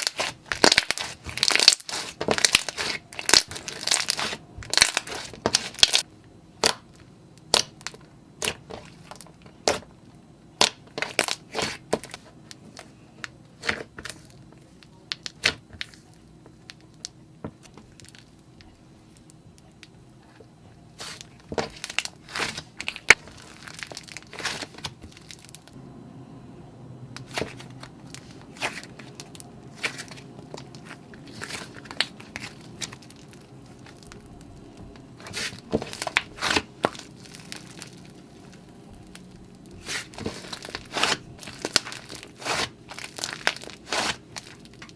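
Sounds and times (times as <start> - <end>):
slime popping and crackling: 0.0 - 9.9, 10.6 - 12.6, 21.0 - 25.8, 27.2 - 44.9.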